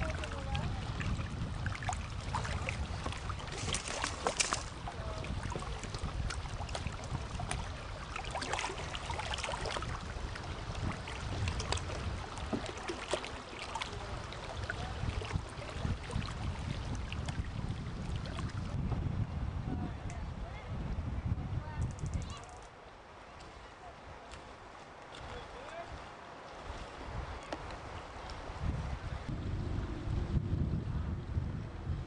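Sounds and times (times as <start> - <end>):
paddles splashing in water: 0.0 - 18.8, 22.7 - 28.6
wind rumbling on microphone: 0.0 - 32.0.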